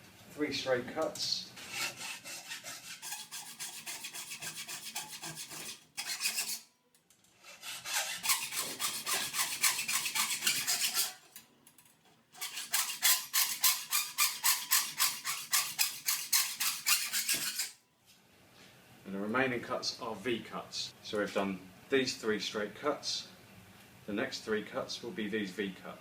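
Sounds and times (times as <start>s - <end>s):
hacksaw rasping through metal: 1.6s - 6.7s, 7.5s - 11.4s, 12.3s - 17.8s.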